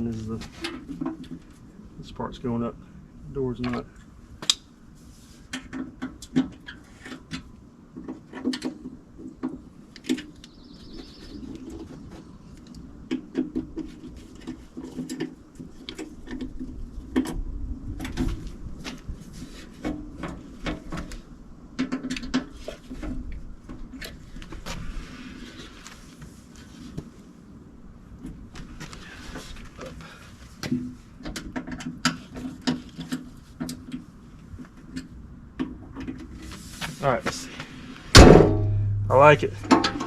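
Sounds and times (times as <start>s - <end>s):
metal hardware tapping: 38.2s - 40.0s.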